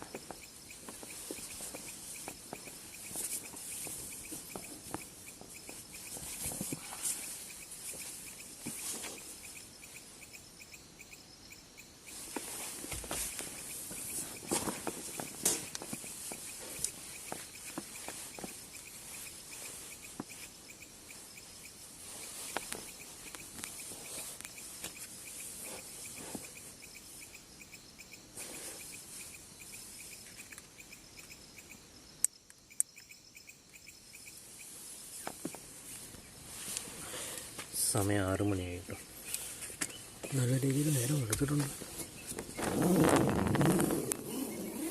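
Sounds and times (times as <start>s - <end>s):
cricket chirping: 0.0s - 44.9s
faint outdoor hiss: 0.0s - 44.9s
soft rustles: 0.2s - 10.3s, 12.1s - 27.3s, 34.3s - 44.9s.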